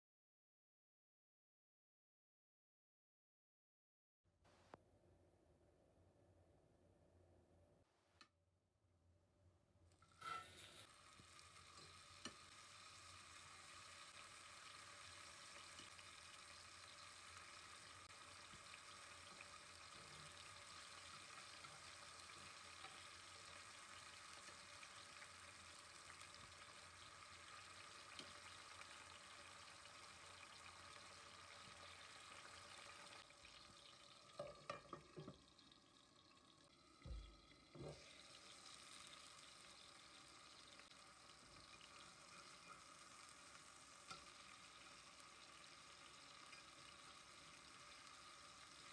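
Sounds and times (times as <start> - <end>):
food sizzling in a frying pan: 10.1 - 48.9.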